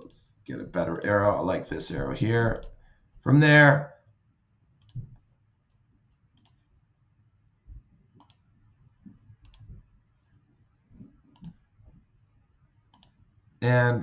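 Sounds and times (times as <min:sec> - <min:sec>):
computer mouse clicks: 0:04.8 - 0:05.2, 0:06.3 - 0:06.7, 0:08.2 - 0:08.5, 0:09.4 - 0:09.8, 0:11.3 - 0:11.6, 0:12.9 - 0:13.2
soft low thumps: 0:04.9 - 0:05.2.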